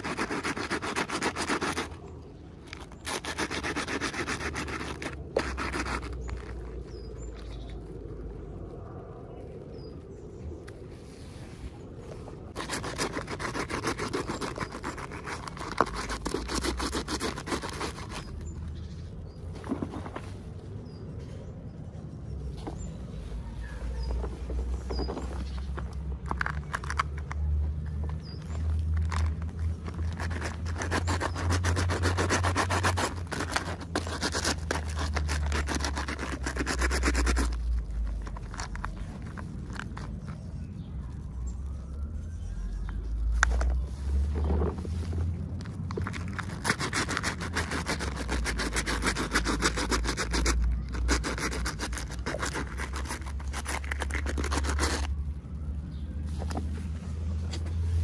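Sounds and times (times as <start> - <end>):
packaging rustling and scraping: 0.0 - 8.0, 12.4 - 18.6, 24.0 - 40.5, 43.2 - 55.2, 56.2 - 58.0.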